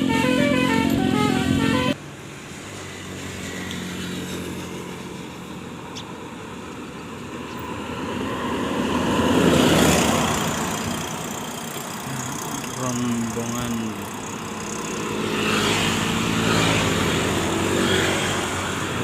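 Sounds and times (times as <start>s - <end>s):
vehicle engine running: 10.4s - 15.2s
vehicle passing close: 14.0s - 19.0s.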